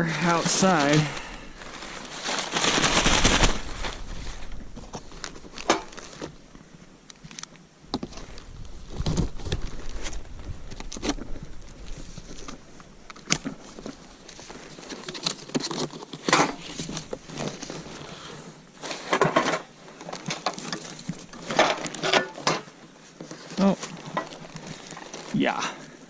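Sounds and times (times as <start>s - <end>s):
packaging rustling: 0.3s - 6.4s, 23.0s - 25.4s.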